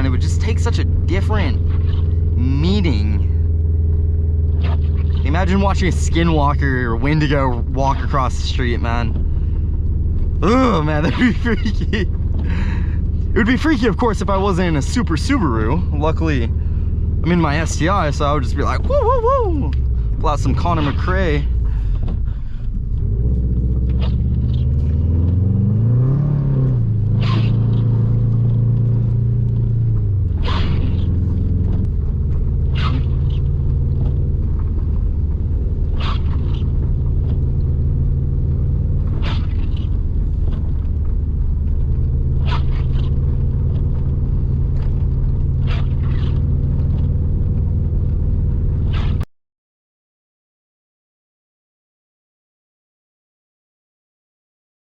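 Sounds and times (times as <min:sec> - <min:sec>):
car engine from inside cabin: 0:00.0 - 0:49.2.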